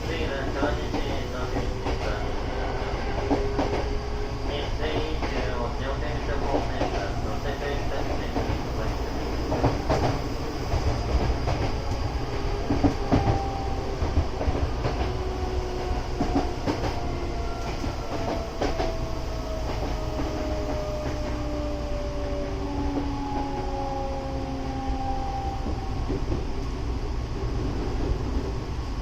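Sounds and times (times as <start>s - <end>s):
train rail rumble: 0.0s - 29.0s
rail-joint clacks: 3.1s - 21.4s.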